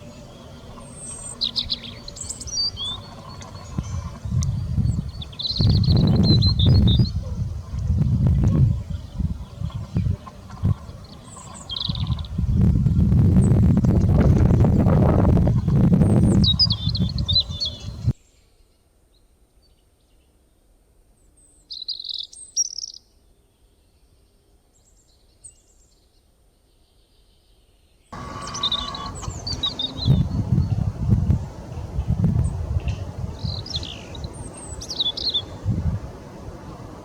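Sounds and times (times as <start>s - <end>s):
small birds chirping: 0.0s - 12.8s, 13.4s - 18.4s, 21.4s - 35.8s
low background rumble: 28.2s - 37.0s.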